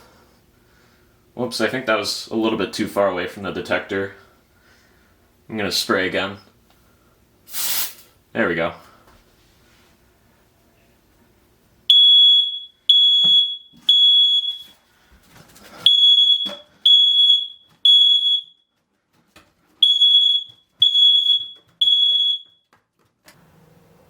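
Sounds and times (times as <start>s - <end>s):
smoke alarm beeping: 11.9s - 14.9s, 15.8s - 18.7s, 19.8s - 22.7s.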